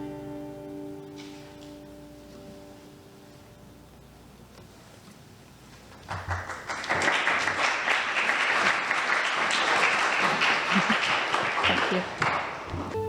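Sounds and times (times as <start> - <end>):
crowd applauding: 6.0 - 13.0.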